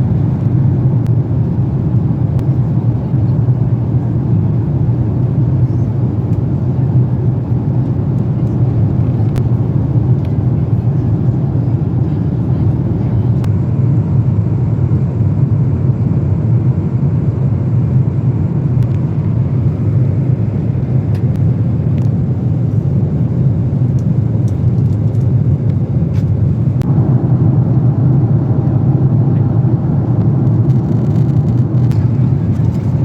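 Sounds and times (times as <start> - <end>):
airliner engines rumbling: 0.0 - 33.0
rushing air: 26.4 - 33.0.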